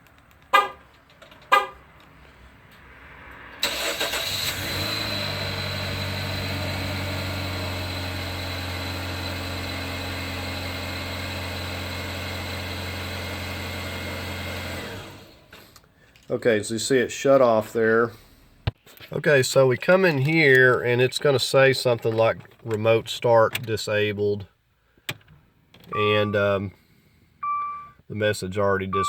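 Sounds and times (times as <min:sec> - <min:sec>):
car engine starting and idling: 0:00.0 - 0:16.0, 0:25.0 - 0:28.0, 0:28.6 - 0:29.0
car horn chirp: 0:00.5 - 0:00.8, 0:01.5 - 0:01.8, 0:25.9 - 0:26.6, 0:27.4 - 0:28.0.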